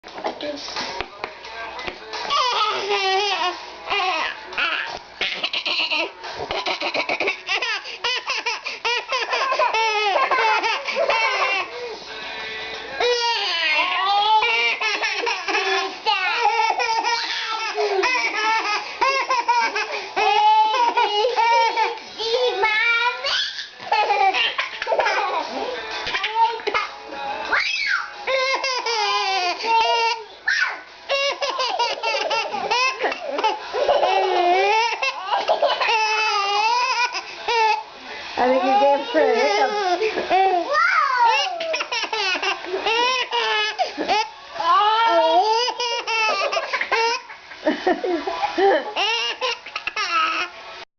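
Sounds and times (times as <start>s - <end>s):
baby laughing: 2.3s - 11.9s, 13.0s - 25.5s, 28.3s - 37.8s, 39.4s - 44.3s, 45.1s - 47.4s, 48.8s - 50.6s
baby squealing: 23.2s - 23.8s.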